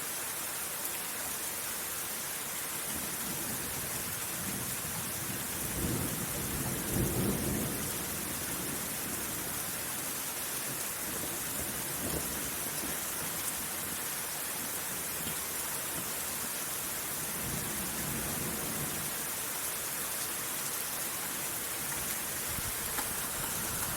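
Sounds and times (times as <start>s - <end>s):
steady rain: 0.0s - 23.9s
thunder rumbling: 22.4s - 23.9s.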